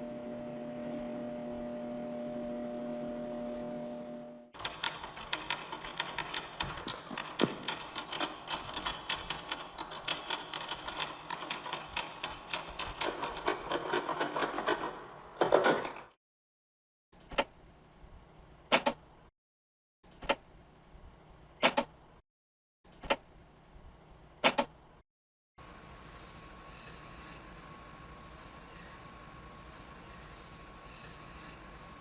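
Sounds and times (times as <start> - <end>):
rapid typing on keys: 4.6 - 15.0.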